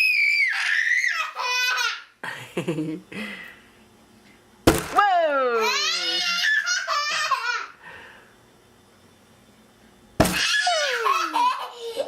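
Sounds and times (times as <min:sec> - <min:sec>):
child squealing laughter: 0:00.0 - 0:02.1, 0:05.6 - 0:07.8, 0:10.4 - 0:12.0
sharp thump: 0:04.7 - 0:05.0.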